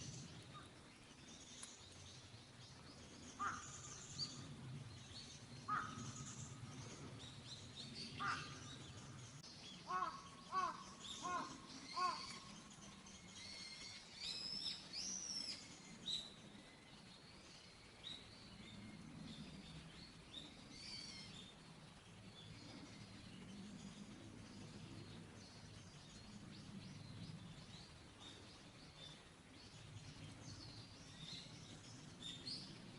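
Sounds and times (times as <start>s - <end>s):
small birds chirping: 0.0s - 32.9s
crow cawing: 3.4s - 3.8s, 5.7s - 6.2s, 8.2s - 8.7s, 9.9s - 12.4s.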